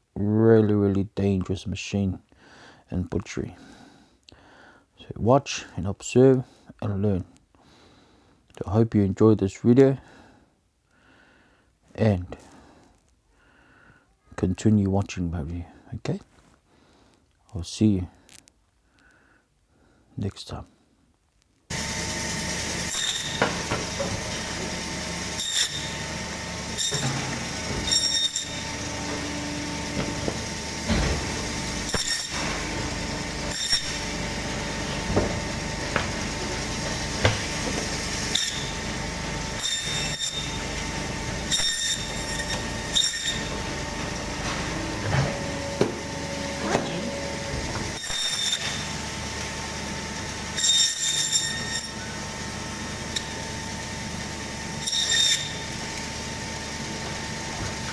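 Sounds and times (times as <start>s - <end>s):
bandsaw humming: 21.7s - 57.9s.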